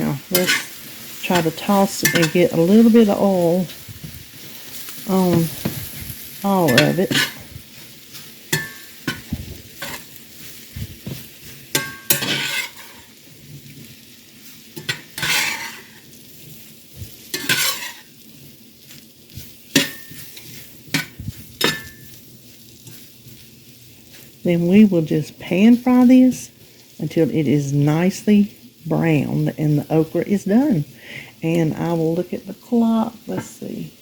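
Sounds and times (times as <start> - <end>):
spatula scraping pan: 0.0 - 18.3, 18.9 - 23.4
okra sizzling in a pan: 0.0 - 34.0.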